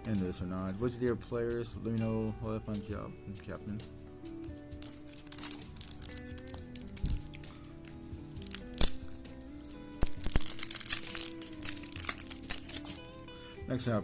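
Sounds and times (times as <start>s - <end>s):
background music: 0.0s - 14.0s
foil wrapper crinkling and tearing: 4.8s - 13.2s.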